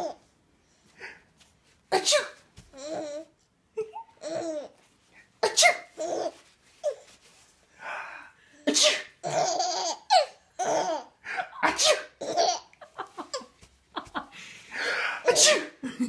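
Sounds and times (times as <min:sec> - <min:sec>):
sneezes: 0:01.9 - 0:02.5, 0:05.4 - 0:05.9, 0:08.7 - 0:09.2, 0:11.6 - 0:12.2, 0:15.3 - 0:15.8.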